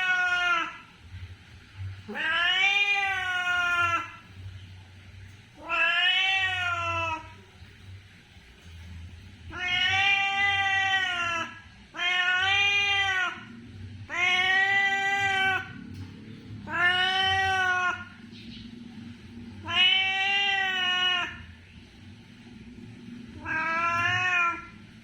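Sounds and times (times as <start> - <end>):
cat meowing: 0.0 - 0.8, 2.1 - 4.2, 5.6 - 7.4, 9.5 - 13.5, 14.1 - 15.8, 16.6 - 18.2, 19.6 - 21.6, 23.4 - 24.8.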